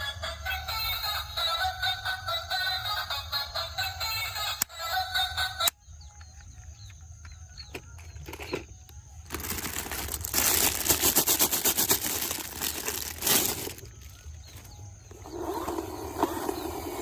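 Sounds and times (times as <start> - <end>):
rapid rattling and crinkling: 6.5 - 14.8.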